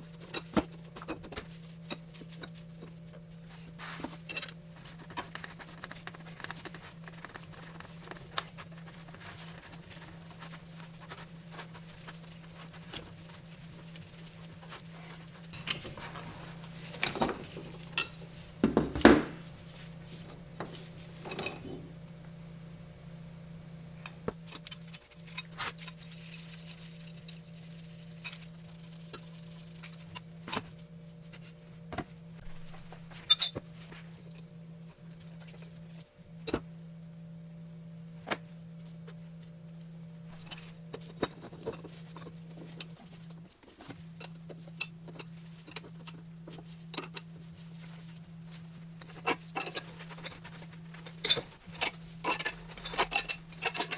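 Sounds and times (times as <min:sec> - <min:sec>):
steady low hum: 0:00.0 - 0:53.9
metal tools clinking and knocking: 0:51.2 - 0:53.9.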